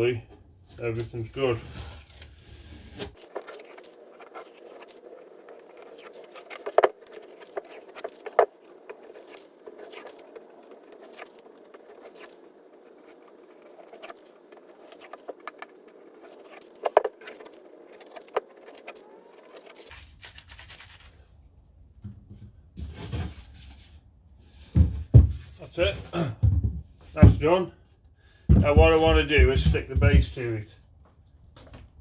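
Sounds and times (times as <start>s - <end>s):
rustling: 1.4s - 21.4s
tape being peeled off wood: 1.6s - 21.3s.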